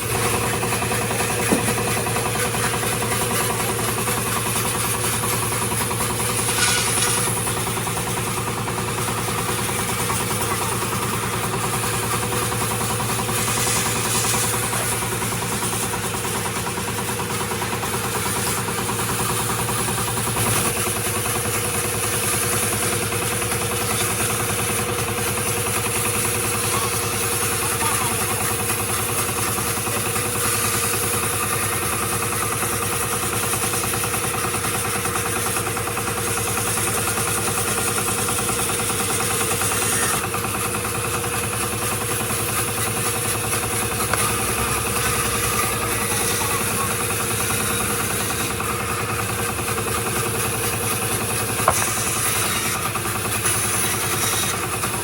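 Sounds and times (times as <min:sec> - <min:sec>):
machine motor humming: 0:00.0 - 0:22.4, 0:41.5 - 0:53.3.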